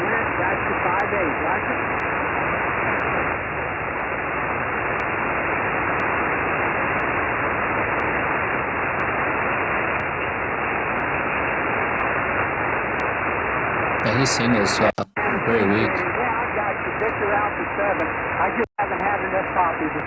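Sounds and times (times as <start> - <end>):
faint tick: 1.9 - 5.3, 5.9 - 6.3, 6.9 - 8.3, 8.9 - 9.2, 9.9 - 11.2, 11.9 - 12.2
radio band noise hiss: 14.0 - 16.0.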